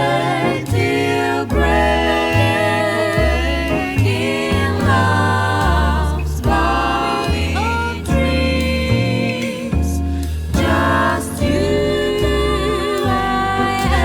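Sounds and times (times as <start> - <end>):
vocal group singing in harmony: 0.0 - 14.0.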